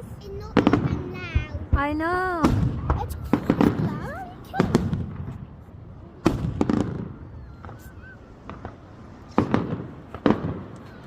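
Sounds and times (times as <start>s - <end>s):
fireworks exploding: 0.0s - 11.0s
rumbling echo: 0.2s - 11.0s.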